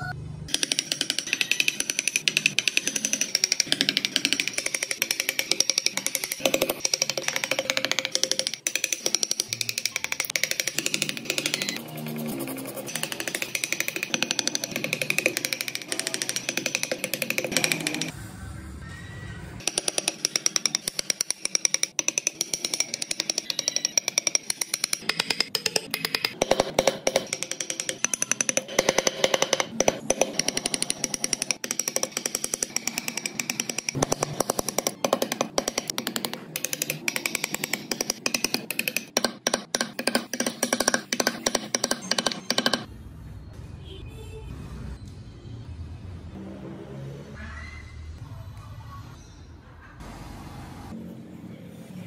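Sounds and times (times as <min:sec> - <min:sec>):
chisel strikes cutting wood: 0:00.5 - 0:11.8, 0:12.8 - 0:18.1, 0:19.6 - 0:42.9.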